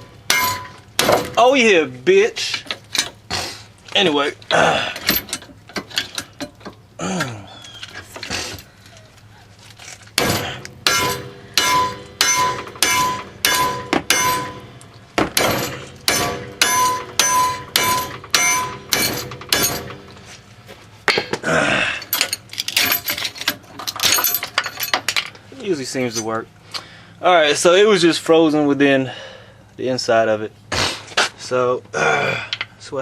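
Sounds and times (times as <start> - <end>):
hammer striking metal: 0.0 - 1.4, 10.2 - 20.1.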